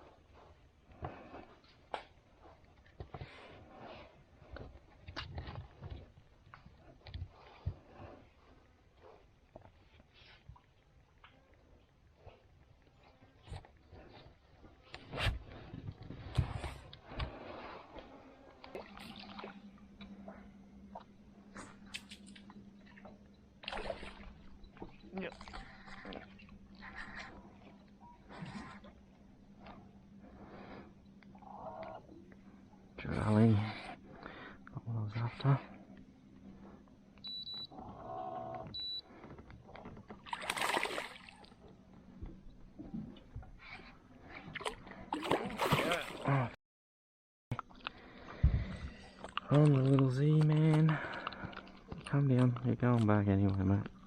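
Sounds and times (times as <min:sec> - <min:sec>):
steady low hum: 0:13.9 - 0:46.5
water sounds: 0:17.0 - 0:28.0, 0:40.0 - 0:43.4, 0:44.3 - 0:46.6, 0:47.6 - 0:54.0
water splashing against boat: 0:40.0 - 0:41.7, 0:44.5 - 0:46.3.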